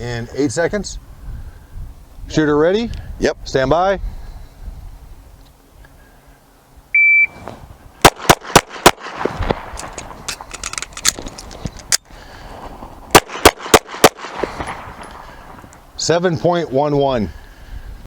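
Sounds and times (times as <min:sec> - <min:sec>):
shot timer beep: 0:07.0 - 0:07.4
pistol shots: 0:08.0 - 0:10.2, 0:13.1 - 0:15.6
reload handling clack: 0:08.1 - 0:12.1.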